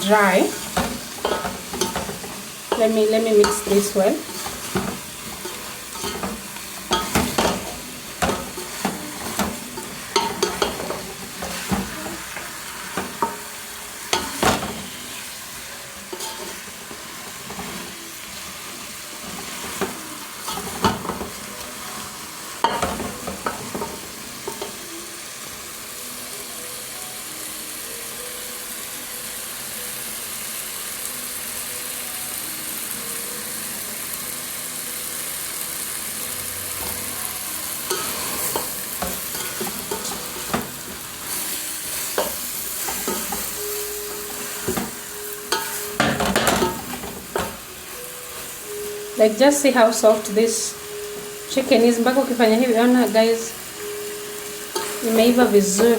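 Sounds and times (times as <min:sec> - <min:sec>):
sauce sizzling: 0:00.0 - 0:55.9
spoon knocking and scraping pot: 0:00.5 - 0:15.2, 0:16.1 - 0:17.9, 0:19.2 - 0:21.6, 0:22.6 - 0:24.8, 0:37.9 - 0:47.6.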